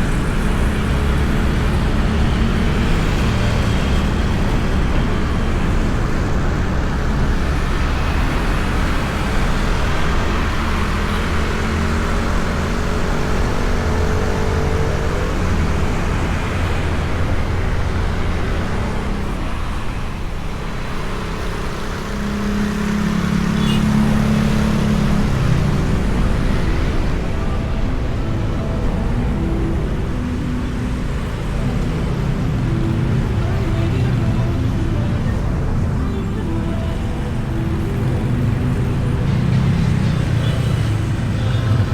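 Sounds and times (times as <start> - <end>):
passing engine: 0.0 - 41.9
road noise: 0.0 - 41.9.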